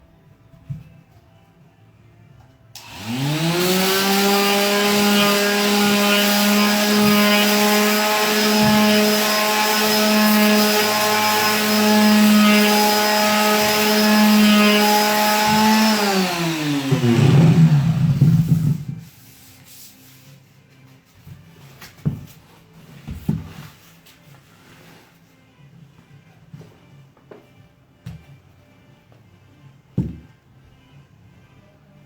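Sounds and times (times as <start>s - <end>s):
electric sander running: 2.8s - 18.9s
knocking and handling: 21.2s - 23.8s, 30.0s - 30.4s.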